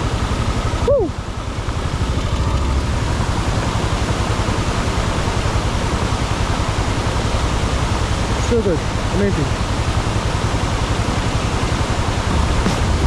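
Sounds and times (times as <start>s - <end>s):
waterfall roaring: 0.0s - 13.0s
wind buffeting microphone: 10.0s - 13.0s.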